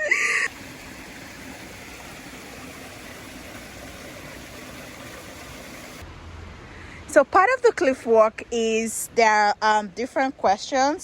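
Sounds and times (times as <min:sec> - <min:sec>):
rushing water: 0:00.0 - 0:06.5.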